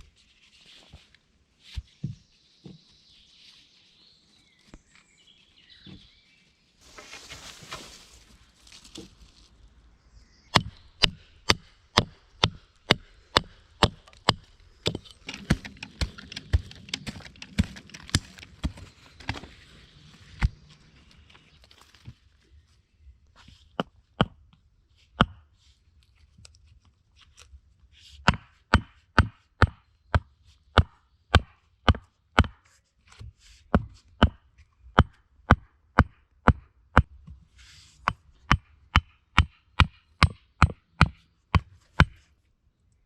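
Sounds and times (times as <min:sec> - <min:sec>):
wood being chopped: 0:10.5 - 0:19.5, 0:28.3 - 0:32.7, 0:35.0 - 0:37.1, 0:38.1 - 0:42.2.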